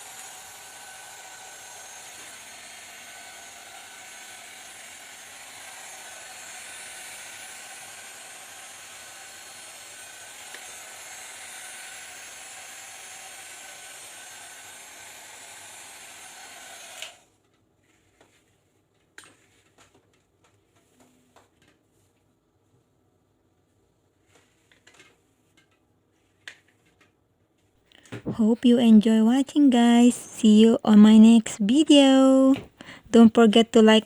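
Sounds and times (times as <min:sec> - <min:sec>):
hair dryer blowing: 0:00.0 - 0:17.2.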